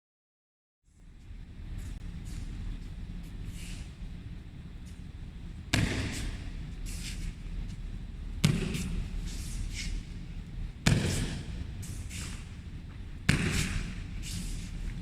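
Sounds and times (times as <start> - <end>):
steady low hum: 0.9 - 15.0
slaps and shuffles on mats: 5.7 - 7.8, 8.4 - 10.2, 10.8 - 15.0.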